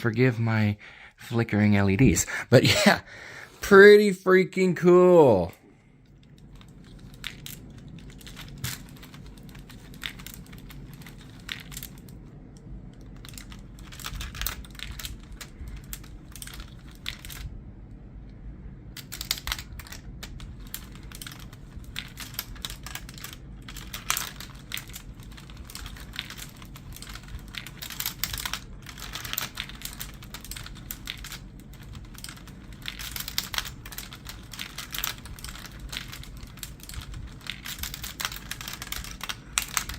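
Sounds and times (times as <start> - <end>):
marbles clattering on wooden track: 19.0 - 39.9.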